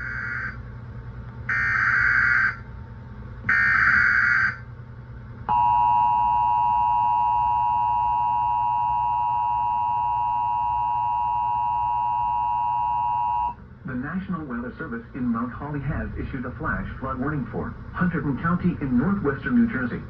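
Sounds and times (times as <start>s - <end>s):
two-tone attention signal: 5.5s - 13.6s.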